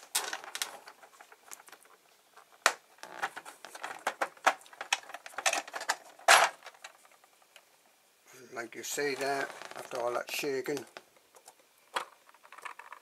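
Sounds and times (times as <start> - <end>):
metal bits rattling in plastic case: 3.2 - 7.2.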